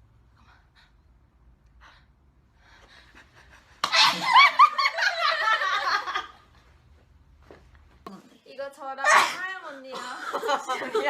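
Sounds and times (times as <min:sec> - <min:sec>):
woman sneezing: 0:09.0 - 0:09.5.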